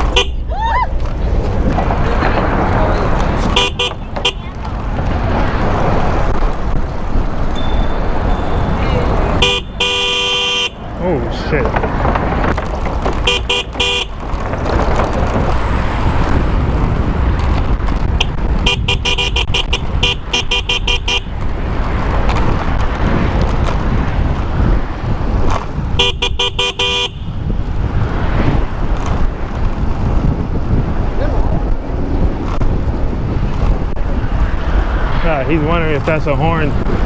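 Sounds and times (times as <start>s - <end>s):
wind and road noise: 0.0s - 37.0s
electronic bicycle horn beeps: 7.6s - 8.8s, 9.4s - 10.8s, 18.6s - 21.3s, 26.0s - 27.3s.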